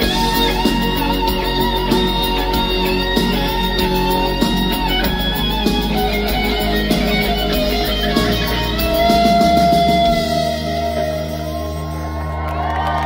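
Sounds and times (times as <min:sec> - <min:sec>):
guitar: 0:00.0 - 0:13.0
live band playing: 0:00.0 - 0:13.0.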